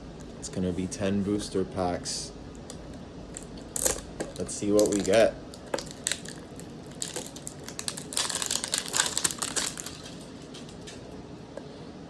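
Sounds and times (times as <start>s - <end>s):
tin being unwrapped crackling: 3.4s - 11.0s.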